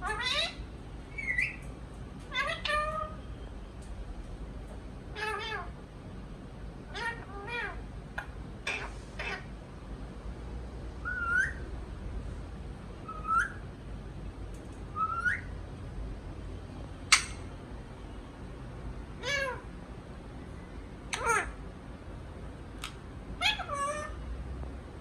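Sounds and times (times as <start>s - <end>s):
parrot calling: 0.0s - 3.2s, 5.1s - 5.8s, 6.9s - 9.5s, 11.0s - 11.7s, 13.0s - 13.7s, 14.9s - 15.6s, 17.1s - 17.5s, 19.2s - 19.7s, 21.1s - 21.6s, 22.8s - 24.2s
parrot rising whistles: 11.0s - 11.6s, 14.9s - 15.5s.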